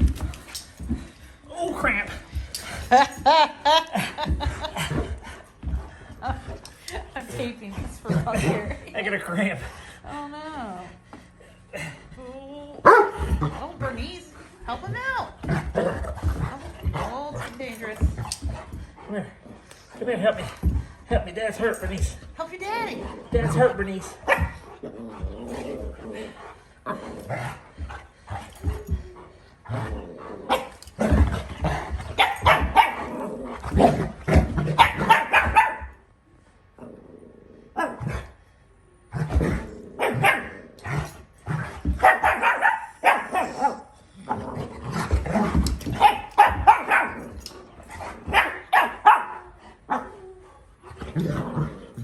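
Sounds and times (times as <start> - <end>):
dog barking and growling: 12.8 - 20.8, 22.7 - 36.0, 36.8 - 38.4, 39.1 - 52.0.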